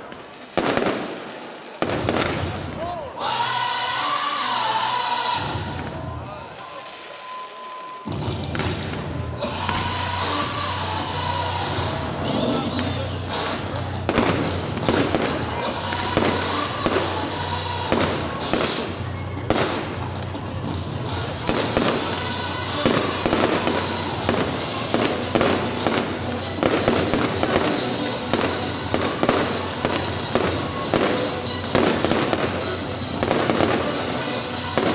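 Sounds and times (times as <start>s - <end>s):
fireworks bangs and crackling: 0.0s - 34.9s
music over sound system: 8.2s - 34.9s.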